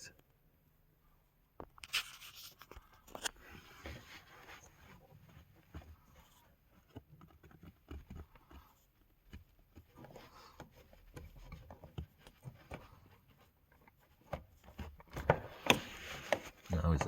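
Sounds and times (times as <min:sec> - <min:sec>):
plastic clicks and rubbing: 0:05.3 - 0:17.0.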